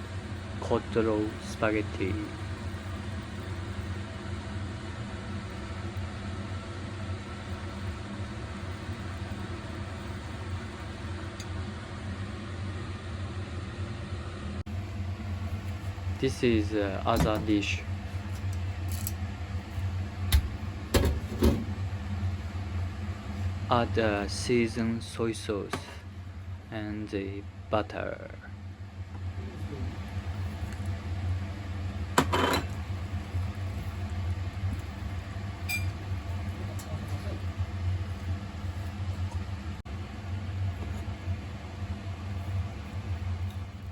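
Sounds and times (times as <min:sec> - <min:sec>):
low machine hum: 0:00.0 - 0:43.9
dishes clattering: 0:32.2 - 0:32.8.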